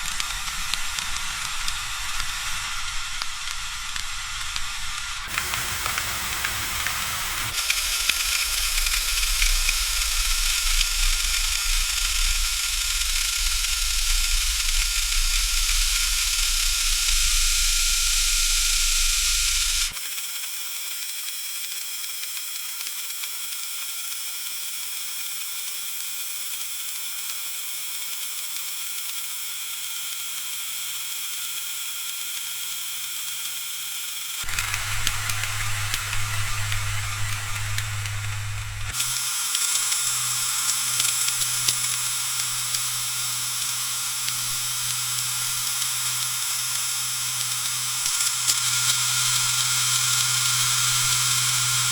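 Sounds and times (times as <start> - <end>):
crackling oil spatter: 0.0 - 12.4
food sizzling in hot oil: 0.3 - 19.9.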